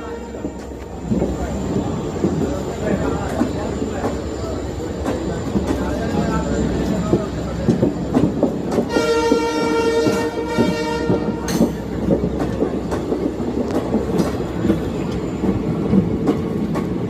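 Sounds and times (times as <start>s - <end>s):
train horn blast: 0.0s - 0.6s, 8.9s - 11.5s
train wheels clattering on rails: 0.0s - 17.0s.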